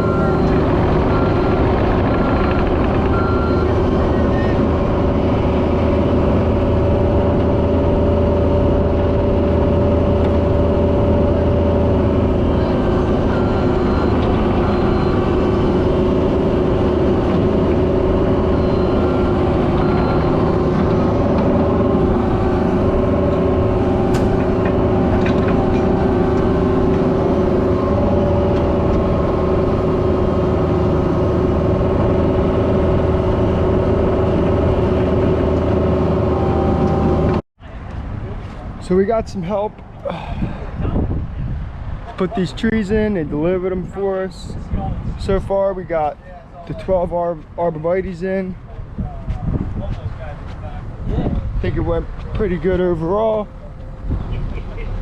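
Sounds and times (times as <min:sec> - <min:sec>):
whining tones: 0:00.0 - 0:37.4
excavator diesel engine running: 0:00.0 - 0:38.2, 0:52.1 - 0:55.0.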